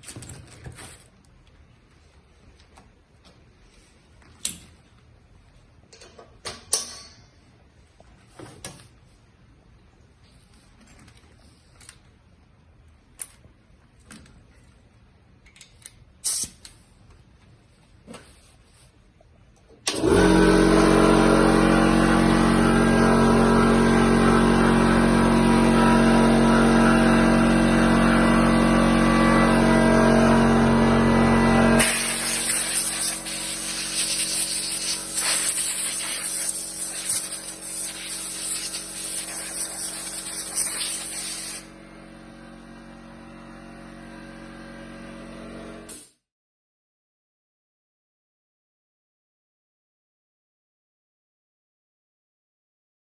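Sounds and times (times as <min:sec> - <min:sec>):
air compressor humming: 0:19.8 - 0:46.2.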